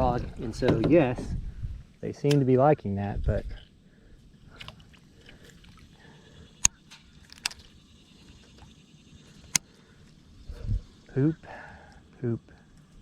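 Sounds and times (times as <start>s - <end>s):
sharp clicks: 6.6s - 7.8s.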